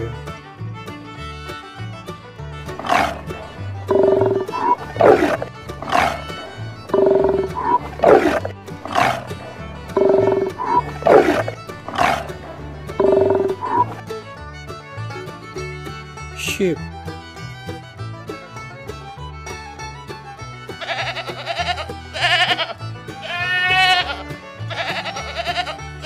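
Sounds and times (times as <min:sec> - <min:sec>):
background music with bass: 0:00.0 - 0:26.0
sea lion barking: 0:02.8 - 0:14.0.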